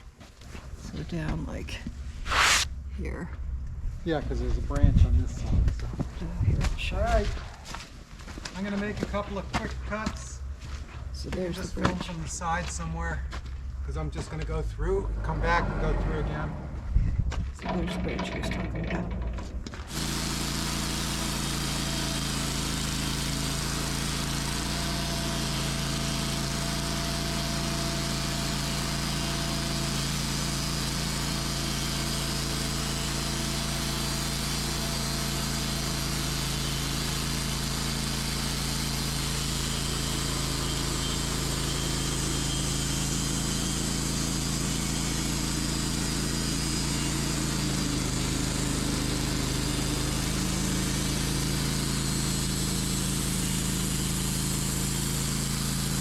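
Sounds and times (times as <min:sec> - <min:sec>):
saw blade cutting log: 0:02.2 - 0:02.7, 0:19.9 - 0:56.0
sawmill engine drone: 0:06.6 - 0:56.0.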